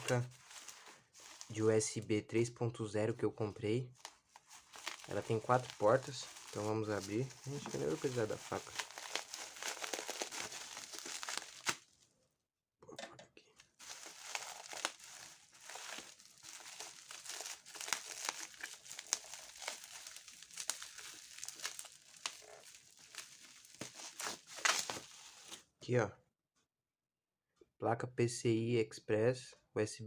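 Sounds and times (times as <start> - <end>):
packaging crinkling and tearing: 0.0 - 1.6, 4.0 - 12.0, 13.8 - 25.6.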